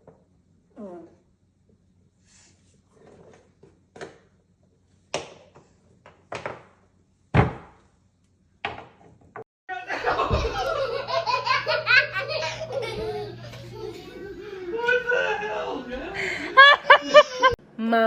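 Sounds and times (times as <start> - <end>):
people laughing: 9.7 - 17.6
voices: 17.8 - 18.0.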